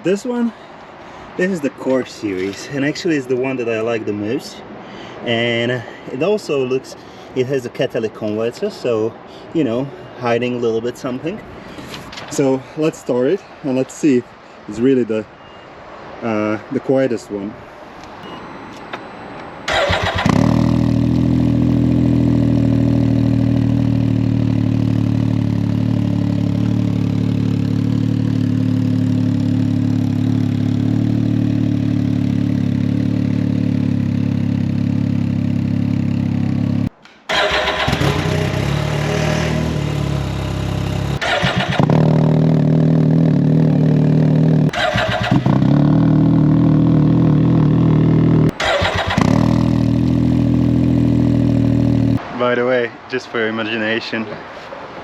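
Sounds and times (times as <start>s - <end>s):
engine idling and revving: 19.7s - 52.2s.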